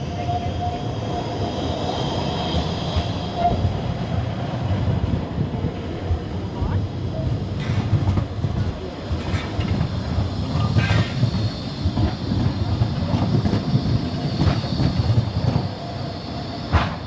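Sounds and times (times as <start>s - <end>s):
train rolling past rumbling: 0.0s - 17.0s
wheels clanking on track: 5.6s - 16.0s.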